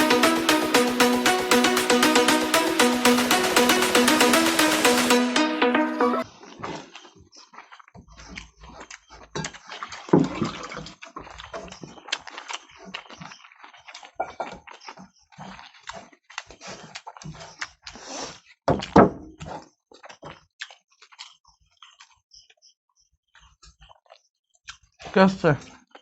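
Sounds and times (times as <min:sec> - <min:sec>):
wet chewing and smacking: 0:06.2 - 0:26.0.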